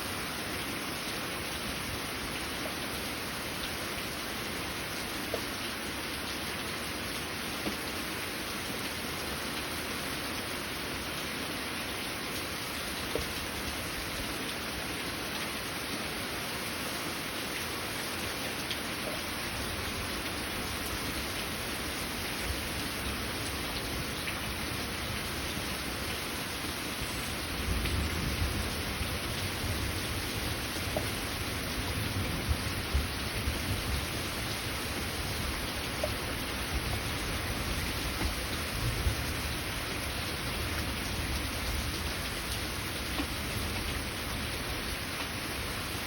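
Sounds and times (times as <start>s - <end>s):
heavy rain falling: 0.0s - 46.0s
low rumble of thunder: 27.6s - 34.2s.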